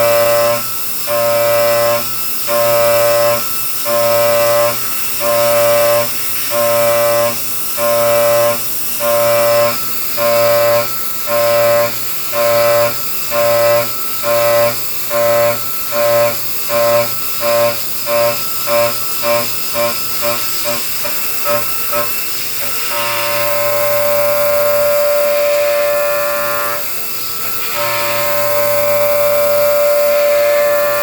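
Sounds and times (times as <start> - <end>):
milling cutter whining: 0.0 - 31.0.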